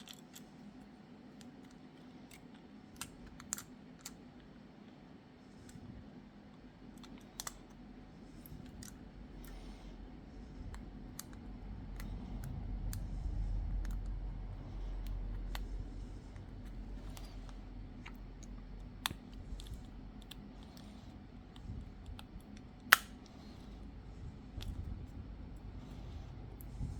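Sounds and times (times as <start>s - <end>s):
low rumble: 7.8s - 26.9s.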